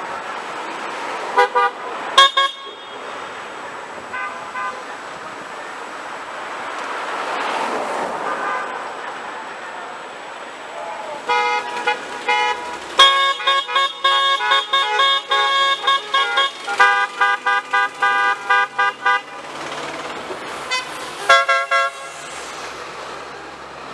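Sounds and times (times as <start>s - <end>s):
car horns honking: 1.3s - 5.1s, 11.2s - 22.4s.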